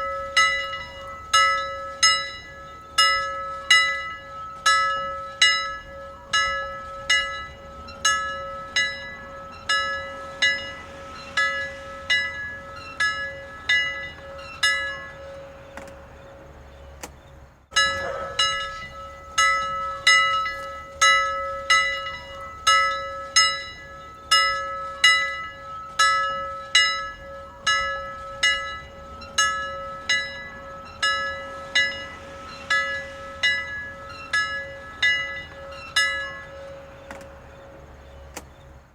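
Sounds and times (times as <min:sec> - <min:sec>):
bell ringing: 0:17.7 - 0:37.0.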